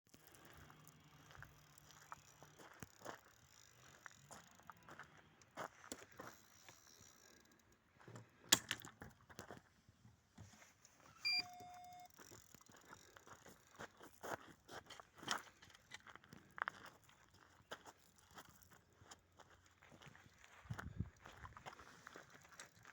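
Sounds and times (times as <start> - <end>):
gear clicking and rattling: 0.1 - 7.8, 11.6 - 16.5
electronic beep: 11.1 - 12.3.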